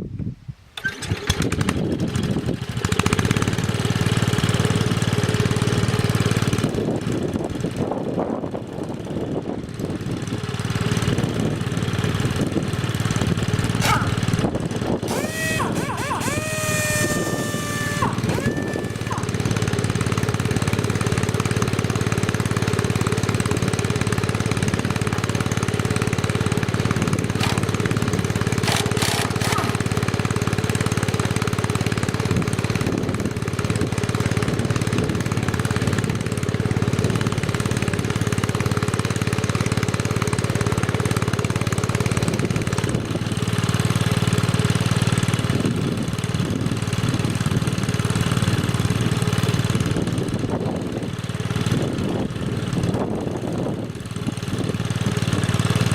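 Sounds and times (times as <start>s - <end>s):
lawn tractor engine running: 0.8s - 55.9s
sharp rattling clicks: 27.3s - 30.0s.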